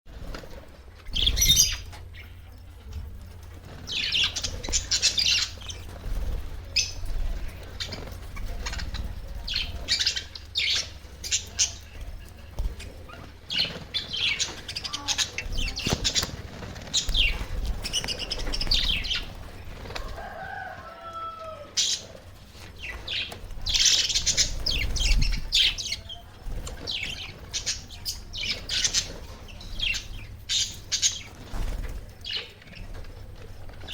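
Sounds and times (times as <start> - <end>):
budgerigars chirping: 1.1 - 2.3, 12.6 - 19.6, 22.8 - 26.1, 26.8 - 31.4.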